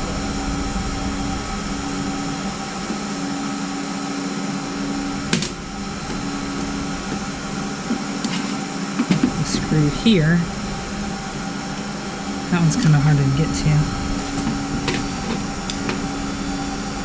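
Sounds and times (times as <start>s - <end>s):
faint constant tones: 0.0s - 17.0s
fan hum: 0.0s - 17.0s.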